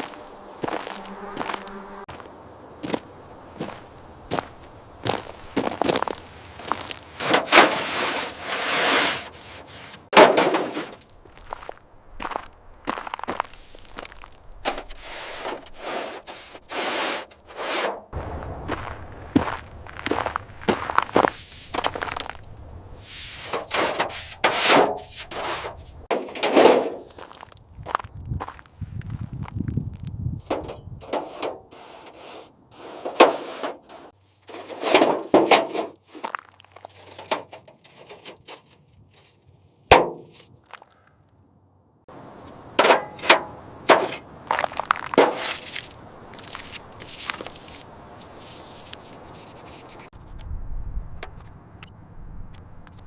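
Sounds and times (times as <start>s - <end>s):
rushing scrape: 6.6s - 11.0s, 13.3s - 22.4s, 23.0s - 27.2s, 30.5s - 36.3s, 42.8s - 50.1s
sharp knocks and cracks: 39.9s - 40.4s.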